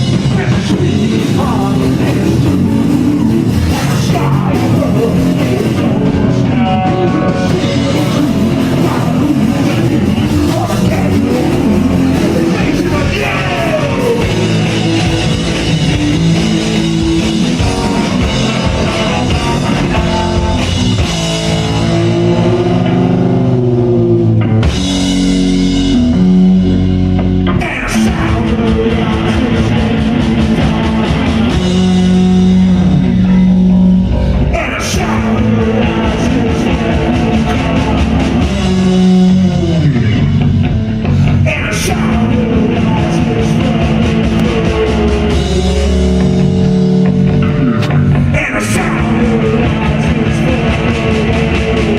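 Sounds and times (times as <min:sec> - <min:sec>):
shouted vocals: 0:00.0 - 0:15.3, 0:34.4 - 0:40.2
bass guitar: 0:00.0 - 0:51.9
distorted electric guitar: 0:00.0 - 0:51.9
drum kit: 0:00.0 - 0:51.9.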